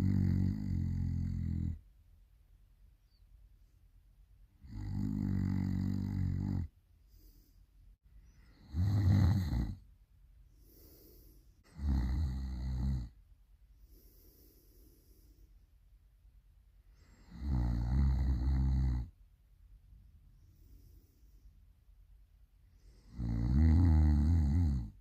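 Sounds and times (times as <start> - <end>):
person snoring loudly: 0.0 - 1.8, 4.6 - 6.7, 8.6 - 9.8, 11.7 - 13.1, 17.2 - 19.1, 23.1 - 25.0
soft breaths: 6.7 - 8.7, 9.3 - 11.8, 13.1 - 16.0, 16.6 - 17.5, 20.0 - 23.3.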